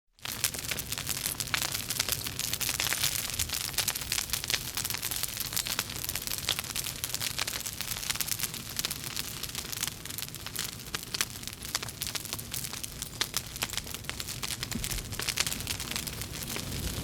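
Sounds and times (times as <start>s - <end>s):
burning wood crackling and snapping: 0.2s - 17.0s
low rush of flame: 0.2s - 17.0s.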